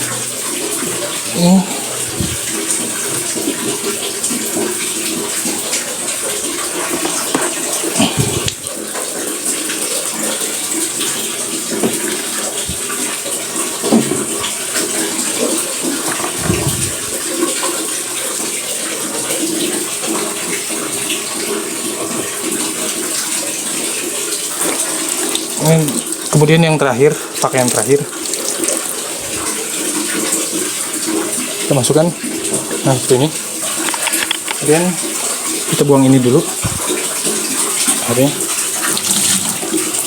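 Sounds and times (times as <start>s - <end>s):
water running and splashing: 0.0s - 40.0s
wet clothes being handled: 1.1s - 4.8s, 6.4s - 13.2s, 14.2s - 17.3s, 27.4s - 30.2s, 36.6s - 40.0s.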